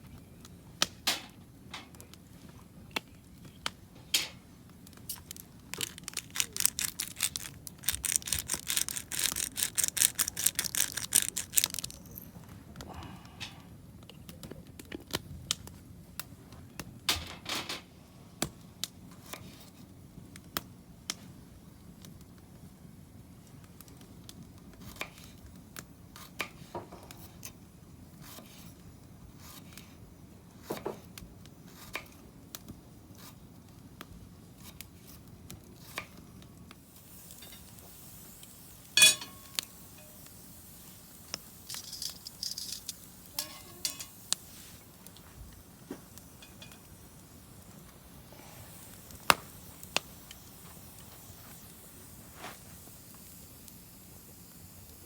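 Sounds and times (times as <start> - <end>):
ringing clink of tableware: 39.0 - 39.5
tableware clicking and tapping: 39.0 - 39.5, 41.7 - 44.2.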